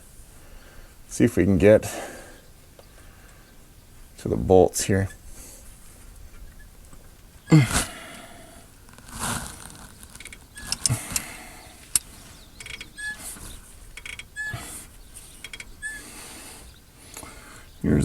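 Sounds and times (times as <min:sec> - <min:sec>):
metal tools clunking and rattling: 0:10.1 - 0:15.9.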